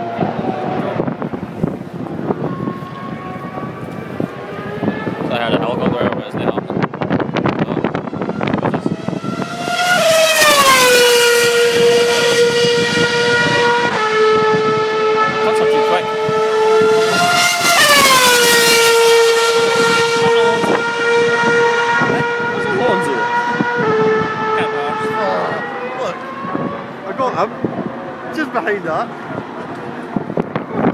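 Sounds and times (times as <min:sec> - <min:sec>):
racing cars passing at full throttle: 0:00.0 - 0:30.9.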